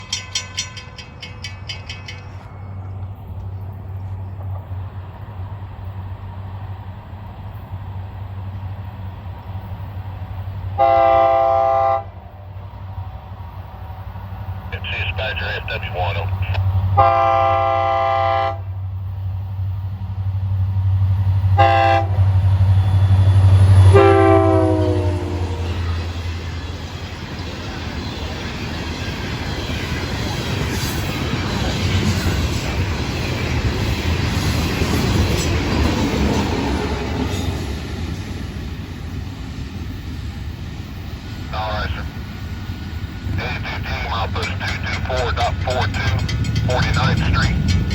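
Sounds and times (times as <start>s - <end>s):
wheel and rail noise: 0.0s - 11.0s, 18.6s - 47.9s
diesel locomotive rumble: 0.0s - 47.9s
train air horn blast: 10.8s - 12.2s, 17.0s - 18.7s, 21.6s - 22.2s, 23.9s - 26.0s.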